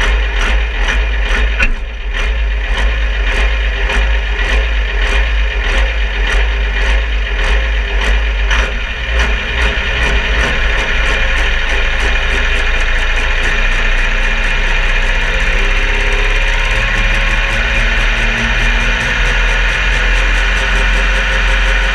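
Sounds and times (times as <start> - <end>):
regular engine tick: 0.0 - 21.9
tractor engine rumbling: 0.0 - 21.9
steady tones: 1.4 - 5.4, 8.4 - 15.9.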